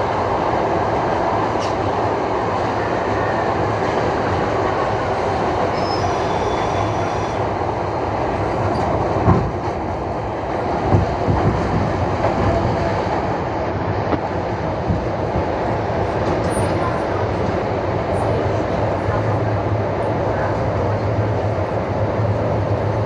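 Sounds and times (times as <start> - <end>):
train wheels rumbling: 0.0 - 23.0
high squeal: 5.8 - 7.4.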